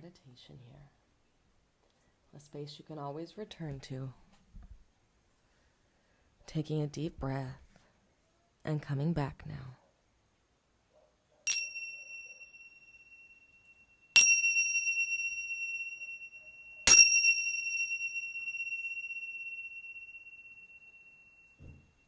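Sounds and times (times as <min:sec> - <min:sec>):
small bell ringing: 0:11.5 - 0:22.0.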